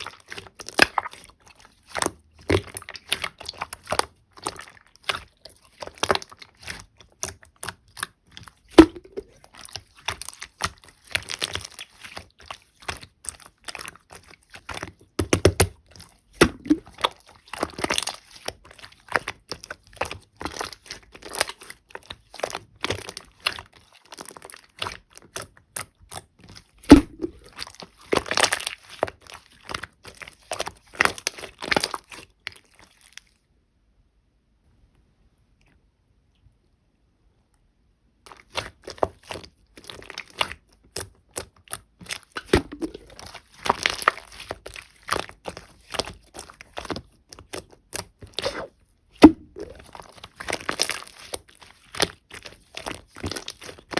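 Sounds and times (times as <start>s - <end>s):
slime squished by hand: 0.0s - 33.4s, 38.3s - 53.9s
slime pops: 8.7s - 9.3s, 16.4s - 17.0s, 26.9s - 27.6s, 42.4s - 43.2s, 48.4s - 50.0s.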